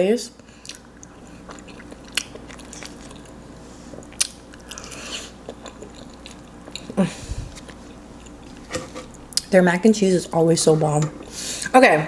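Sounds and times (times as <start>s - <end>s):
person chewing food: 0.6s - 9.5s.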